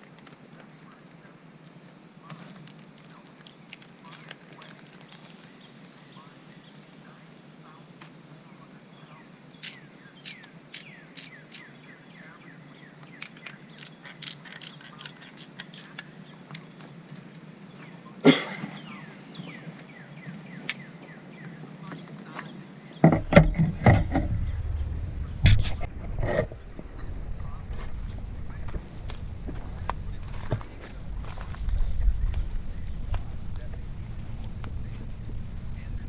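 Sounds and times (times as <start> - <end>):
campfire crackling and popping: 0.0 - 7.0, 23.8 - 36.0
low rumbling and knocks: 23.0 - 36.0.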